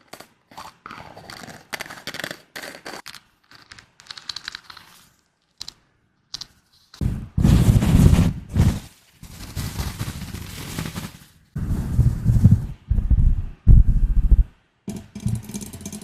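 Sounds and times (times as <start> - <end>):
scratching: 6.4 - 14.5.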